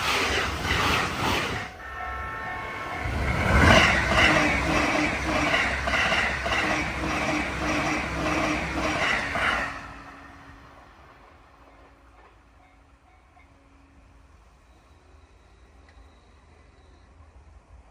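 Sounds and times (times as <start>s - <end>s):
train running noise: 0.0s - 17.9s
train horn: 1.7s - 5.2s
level crossing alarm ringing: 1.8s - 5.5s.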